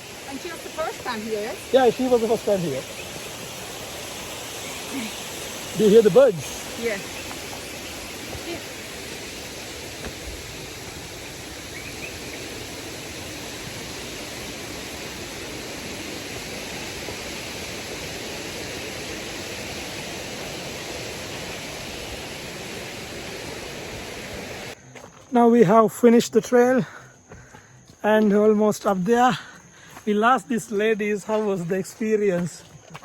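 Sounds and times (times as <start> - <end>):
river water rushing: 0.0 - 24.8.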